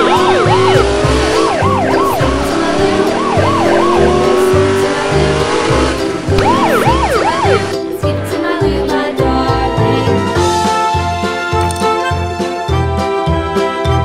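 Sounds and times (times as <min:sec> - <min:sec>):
siren-like whooping sweeps: 0:00.0 - 0:07.9
rising tone: 0:00.0 - 0:08.2
background music with beat: 0:00.0 - 0:14.0.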